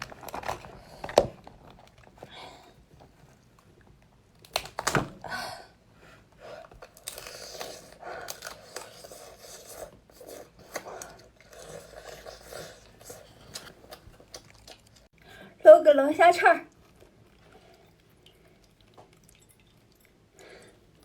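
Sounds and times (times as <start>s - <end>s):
person chewing and crunching food: 6.6s - 15.2s, 16.7s - 21.0s.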